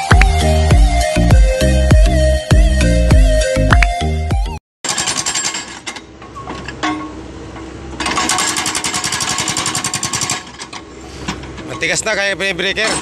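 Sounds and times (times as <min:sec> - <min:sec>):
hydraulic breaker hammering rock: 0:04.8 - 0:05.9, 0:08.0 - 0:10.8
excavator engine: 0:04.9 - 0:13.0.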